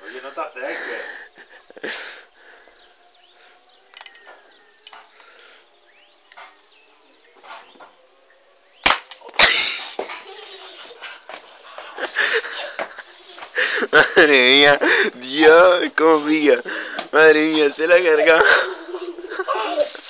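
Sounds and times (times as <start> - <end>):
faint bird chirps: 1.1 - 8.9
airsoft pistol cracks: 8.8 - 9.8.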